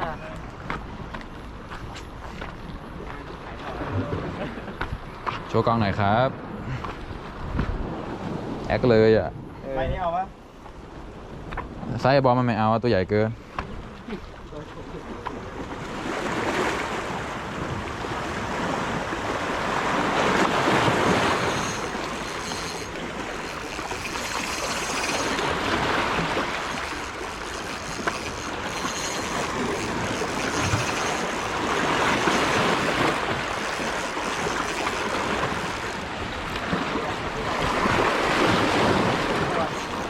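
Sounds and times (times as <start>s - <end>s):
sea waves washing: 14.8s - 40.0s.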